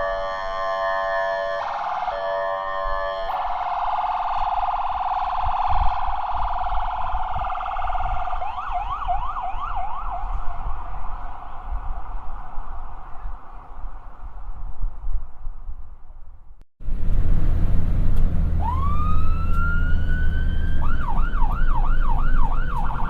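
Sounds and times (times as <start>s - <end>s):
ambulance siren: 0.0s - 13.6s, 18.6s - 23.0s
low rumble: 1.5s - 23.0s.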